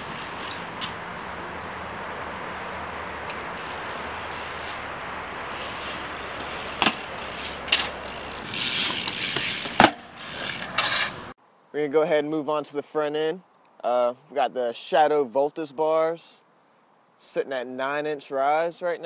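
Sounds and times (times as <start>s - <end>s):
bike hub ticking: 2.4s - 11.0s.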